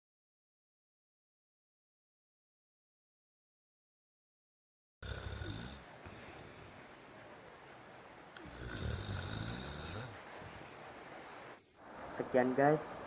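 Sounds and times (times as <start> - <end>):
snoring: 5.0 - 6.8, 8.4 - 10.6.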